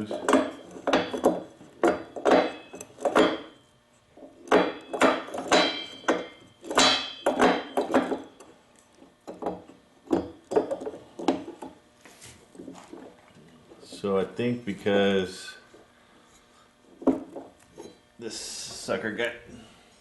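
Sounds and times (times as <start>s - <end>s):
tools and metal parts knocking: 0.0s - 3.6s, 4.4s - 8.5s, 9.2s - 11.8s.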